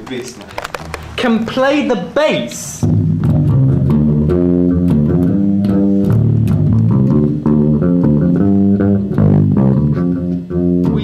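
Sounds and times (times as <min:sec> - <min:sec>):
bass guitar plucked notes: 0:02.8 - 0:11.0.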